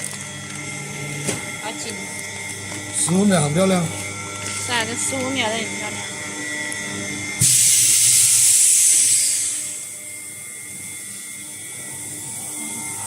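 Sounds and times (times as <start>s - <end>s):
vacuum sealer humming: 0.0s - 13.0s
loud hiss of air: 7.4s - 10.0s.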